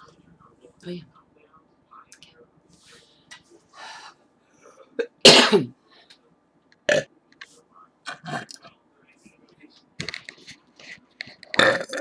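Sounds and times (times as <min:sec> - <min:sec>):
woman belching: 0:11.6 - 0:12.0.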